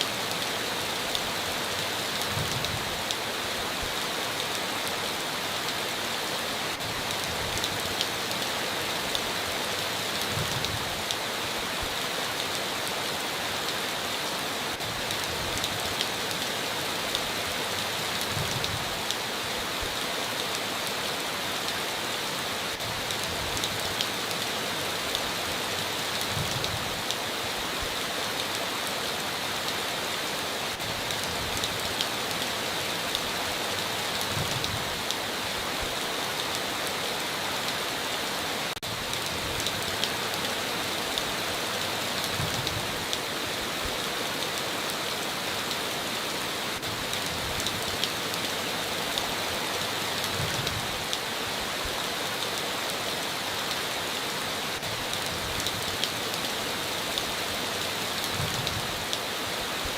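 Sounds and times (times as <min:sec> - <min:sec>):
heavy rain on a tin roof: 0:00.0 - 0:59.9.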